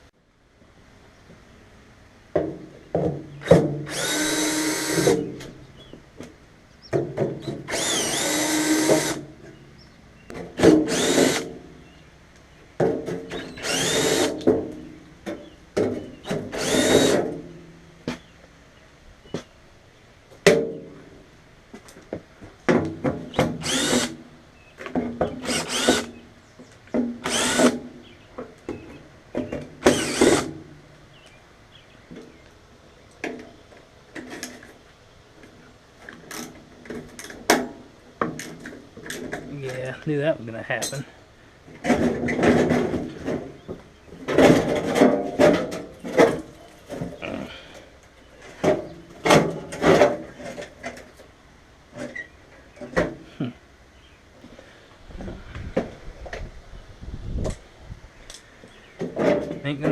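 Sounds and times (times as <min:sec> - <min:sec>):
power drill whining: 0:03.8 - 0:05.3, 0:07.4 - 0:09.2, 0:10.8 - 0:11.5, 0:13.3 - 0:14.4, 0:16.5 - 0:17.2, 0:23.6 - 0:24.2, 0:25.4 - 0:26.2, 0:27.2 - 0:27.8, 0:29.8 - 0:30.5.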